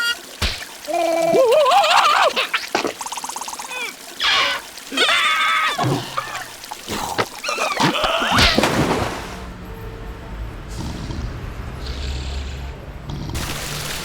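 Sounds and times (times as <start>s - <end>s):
cartoon character vocalizations: 0.9s - 6.5s.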